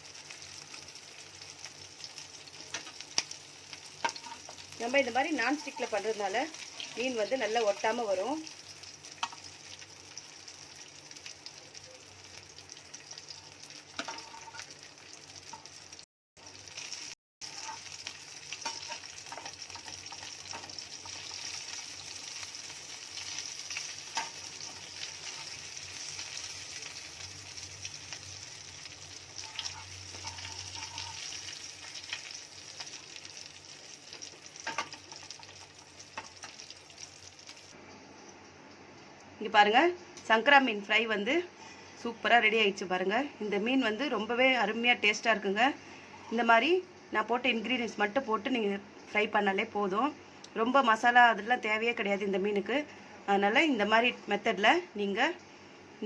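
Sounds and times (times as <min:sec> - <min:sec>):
fish sizzling in oil: 0:00.0 - 0:37.8.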